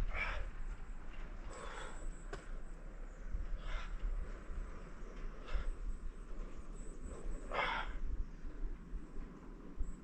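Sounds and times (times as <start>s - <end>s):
steady low rumble: 0.0s - 10.0s.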